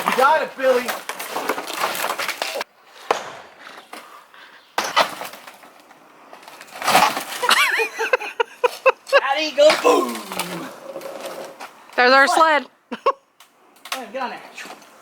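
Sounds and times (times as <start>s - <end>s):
wooden boards cracking and splintering: 0.0s - 3.4s, 4.8s - 5.8s, 6.4s - 7.8s, 9.6s - 11.6s.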